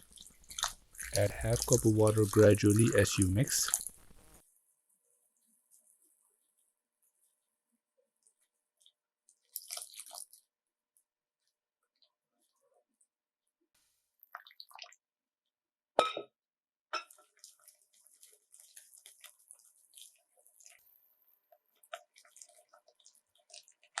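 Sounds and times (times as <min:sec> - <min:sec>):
batter being stirred in a bowl: 0:00.0 - 0:13.2, 0:17.1 - 0:20.8, 0:21.7 - 0:24.0.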